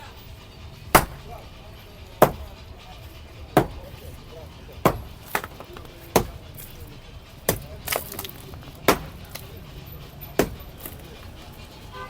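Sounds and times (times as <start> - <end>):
hand tool striking structure: 0.8 - 12.0.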